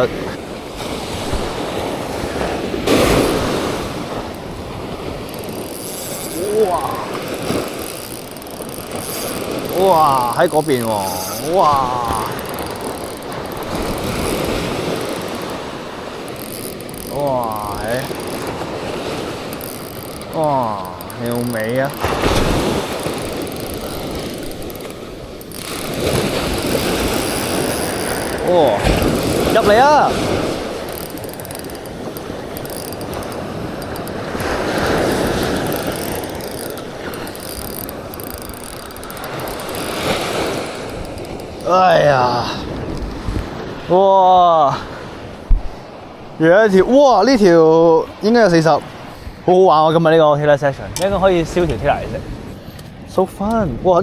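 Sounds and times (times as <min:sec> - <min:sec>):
surf washing: 0:00.0 - 0:54.0
fishing reel clicking: 0:01.5 - 0:43.3.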